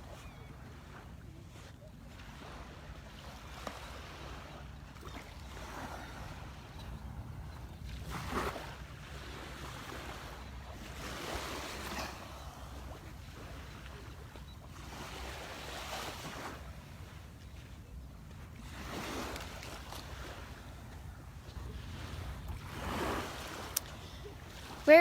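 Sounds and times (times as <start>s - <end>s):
wind rumbling on microphone: 5.4s - 25.0s.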